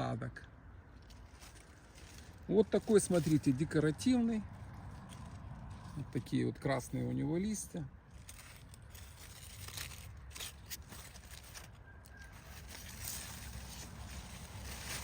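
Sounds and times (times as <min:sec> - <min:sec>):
leaves and branches rustling: 0:00.7 - 0:15.0
crackles: 0:08.1 - 0:15.0.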